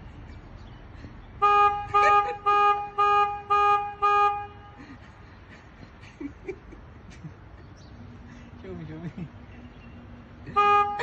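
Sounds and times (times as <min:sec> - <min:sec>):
horn honking: 0:01.4 - 0:05.0, 0:10.5 - 0:11.0.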